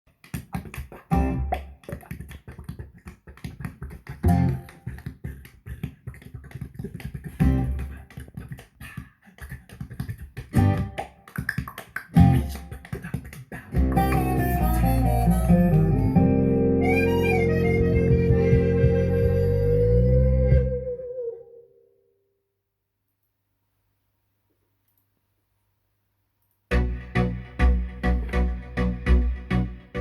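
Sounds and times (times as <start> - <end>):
plucked guitar music: 1.1 - 1.8, 4.2 - 4.8, 7.4 - 7.9, 10.5 - 11.2, 12.1 - 12.7, 13.8 - 21.6, 26.7 - 30.0
deep bass note: 13.8 - 20.9, 26.7 - 30.0.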